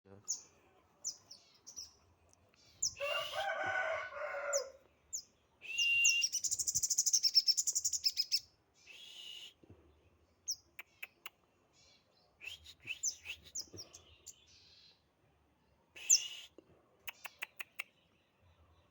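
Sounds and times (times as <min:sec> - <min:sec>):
bird singing chirps and trills: 0:00.2 - 0:03.0, 0:04.5 - 0:09.0.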